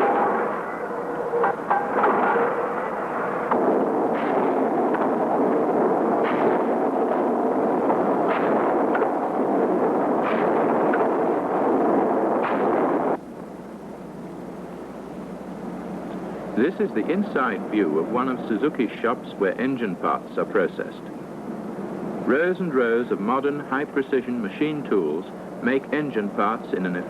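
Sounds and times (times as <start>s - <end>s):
heavy machine bangs: 0.0s - 9.4s
factory machinery din: 0.0s - 20.4s.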